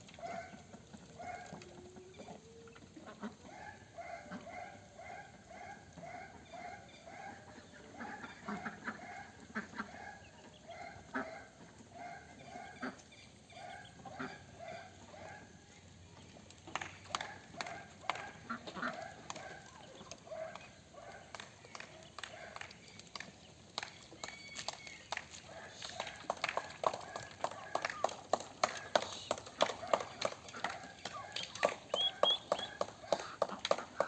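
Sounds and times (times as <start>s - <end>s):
ducks calling: 2.9s - 15.4s, 17.1s - 22.7s, 28.7s - 34.0s.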